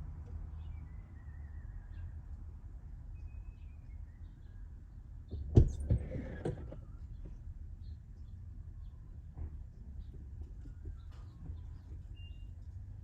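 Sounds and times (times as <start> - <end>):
faint bird chirps: 3.1 - 4.7, 10.7 - 12.7.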